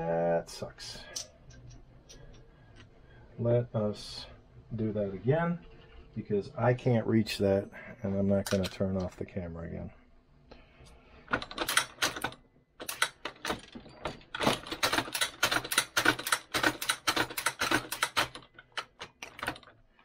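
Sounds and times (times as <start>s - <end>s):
small hard parts clicking: 11.3s - 20.0s.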